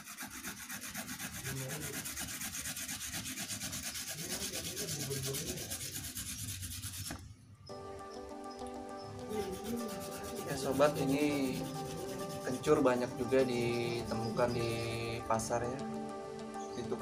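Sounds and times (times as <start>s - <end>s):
ginger grated on hand grater: 0.0s - 7.2s, 9.2s - 15.4s.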